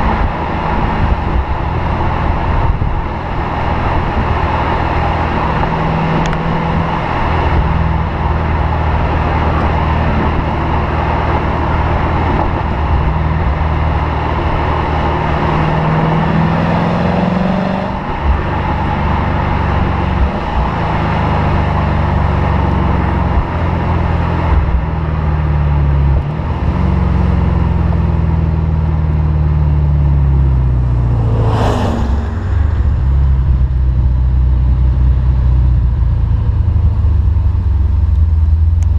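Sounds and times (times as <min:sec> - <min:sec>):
car engine accelerating: 0:00.0 - 0:38.9
brief rushing sweep: 0:30.8 - 0:34.0.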